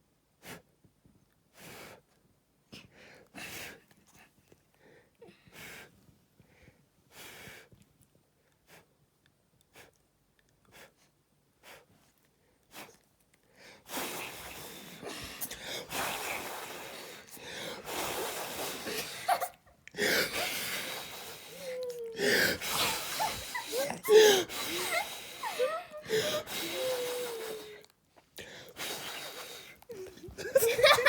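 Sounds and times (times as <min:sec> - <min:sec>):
person blowing air: 0:13.9 - 0:27.9, 0:28.6 - 0:30.2.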